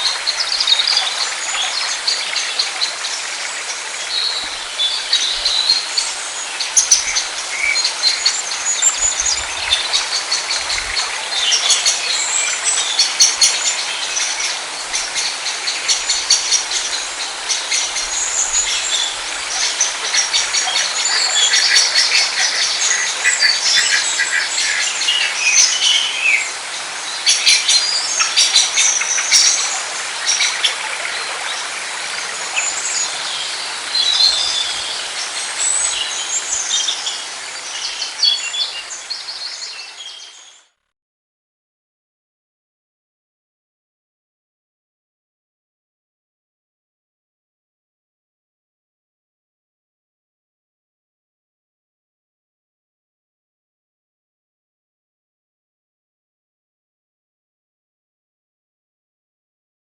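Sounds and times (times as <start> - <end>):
small birds chirping: 0.0 - 40.8.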